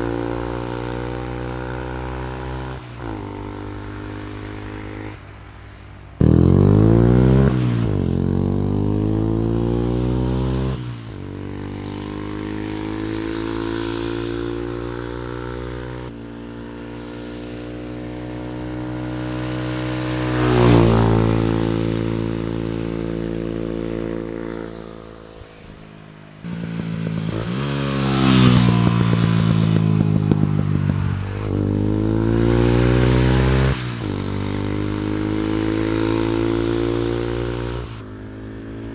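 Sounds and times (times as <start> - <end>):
motorcycle engine revving hard: 6.2 - 16.1, 26.4 - 38.9
exhaust popping and crackling: 26.4 - 35.7.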